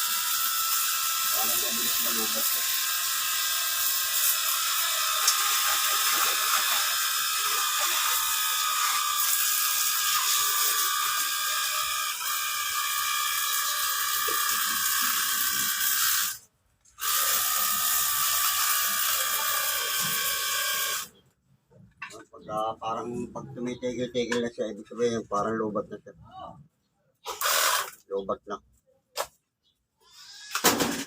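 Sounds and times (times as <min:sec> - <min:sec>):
pressure washer motor whine: 0:00.0 - 0:03.1.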